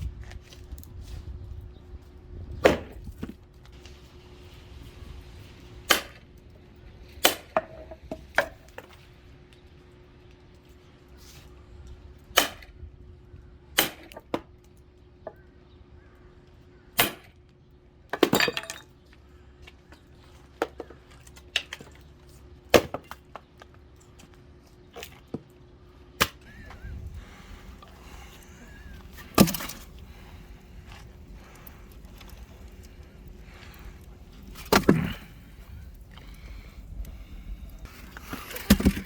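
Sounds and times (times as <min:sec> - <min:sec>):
firewood being chopped: 0:02.6 - 0:03.4, 0:05.8 - 0:06.3, 0:07.2 - 0:09.0, 0:12.3 - 0:12.8, 0:13.8 - 0:14.5, 0:17.0 - 0:17.3, 0:22.7 - 0:23.4, 0:26.2 - 0:33.8, 0:34.4 - 0:35.4, 0:38.2 - 0:39.0.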